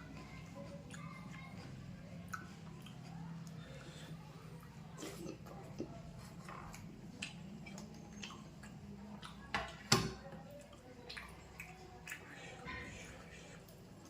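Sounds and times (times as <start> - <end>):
person chewing food: 0.7 - 9.5, 10.5 - 14.0.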